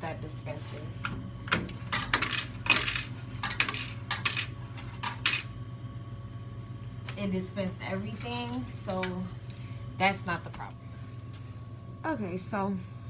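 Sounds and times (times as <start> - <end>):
coins clinking into cup: 1.9 - 5.5.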